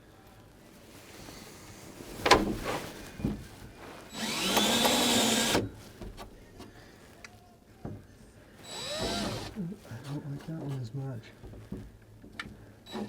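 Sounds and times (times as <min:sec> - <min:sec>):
power drill spinning up: 0:04.1 - 0:05.6, 0:08.6 - 0:09.6.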